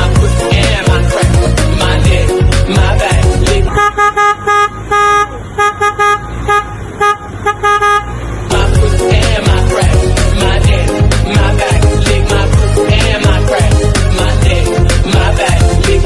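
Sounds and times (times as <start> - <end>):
background music with a beat: 0.0 - 3.8, 8.5 - 16.0
car horn toots: 3.7 - 8.4.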